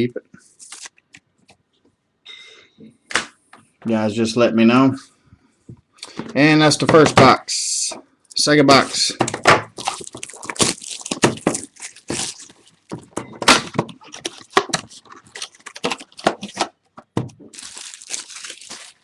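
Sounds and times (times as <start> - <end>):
plastic wrapping crackling and ripping: 0.6 - 1.1, 9.7 - 19.0.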